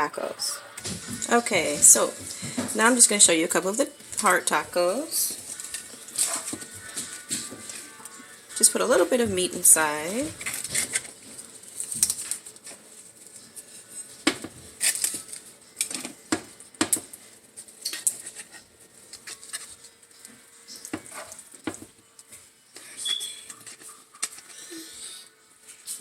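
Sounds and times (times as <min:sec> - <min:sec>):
utensil scraping a pan: 0:01.1 - 0:16.2, 0:16.9 - 0:20.0, 0:20.7 - 0:21.9.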